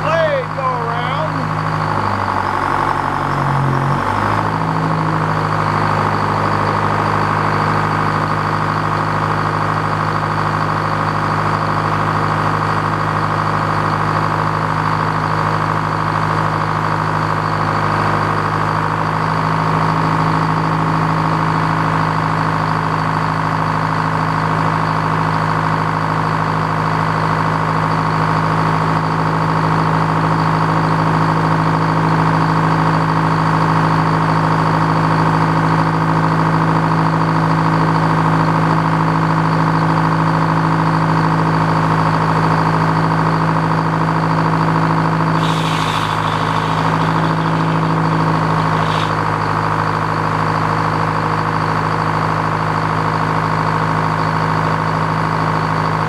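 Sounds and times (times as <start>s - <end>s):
sawmill drone with high whine: 0.0s - 10.0s, 45.2s - 51.1s
saw blade cutting log: 45.4s - 49.8s.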